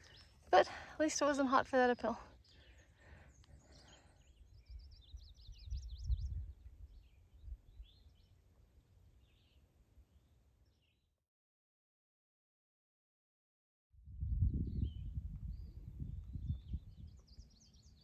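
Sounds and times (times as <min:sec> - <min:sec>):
songbird singing: 0:00.0 - 0:11.2, 0:14.3 - 0:18.0
bird chirps: 0:14.7 - 0:18.0.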